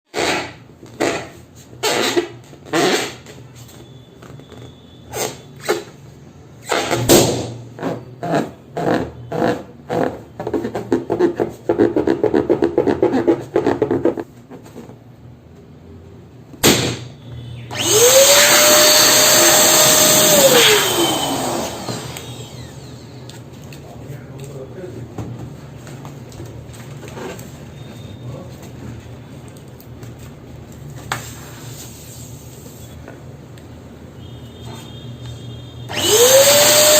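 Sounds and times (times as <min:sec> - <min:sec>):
electric balloon pump running: 0:00.1 - 0:03.2, 0:17.7 - 0:23.3, 0:35.9 - 0:36.9
balloons squeaking and hissing: 0:00.1 - 0:06.0, 0:06.6 - 0:14.3.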